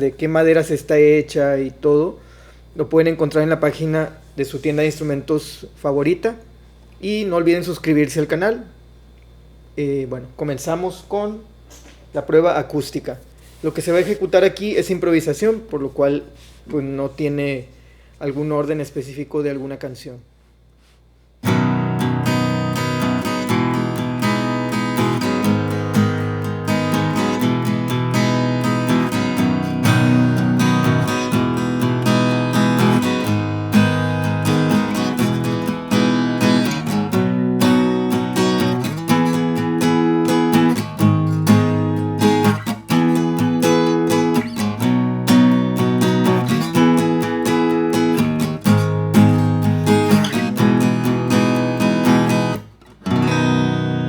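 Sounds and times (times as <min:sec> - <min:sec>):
acoustic guitar strummed chords: 0:21.4 - 0:54.0.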